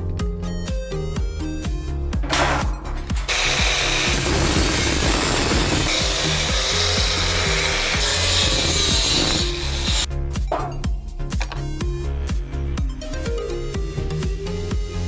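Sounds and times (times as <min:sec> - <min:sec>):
background music: 0:00.0 - 0:15.0
tool grinding: 0:02.2 - 0:11.8.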